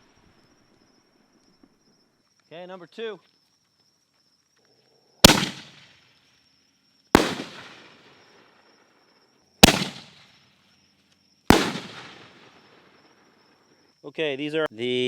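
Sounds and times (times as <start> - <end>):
firework bangs with echo: 5.2 - 6.0, 7.2 - 8.3, 9.6 - 10.4, 11.5 - 12.8.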